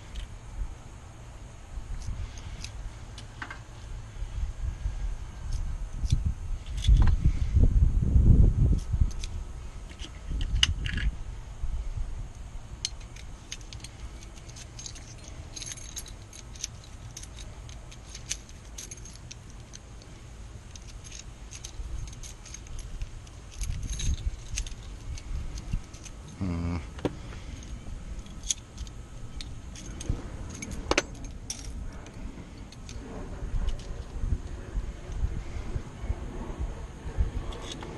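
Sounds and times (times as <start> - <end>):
keys and lock parts jingling: 5.4 - 7.1, 12.8 - 33.0.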